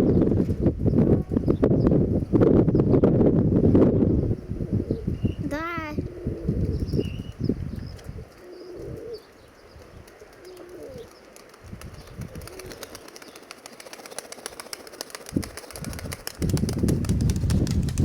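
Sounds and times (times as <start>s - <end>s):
pigeons cooing: 4.4s - 16.3s.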